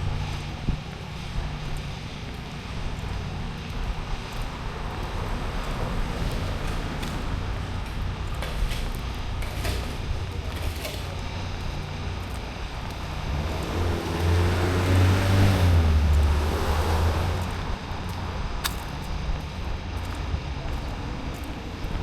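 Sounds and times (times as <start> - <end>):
low traffic hum: 0.0 - 22.0
car passing: 2.2 - 9.0, 12.1 - 22.0.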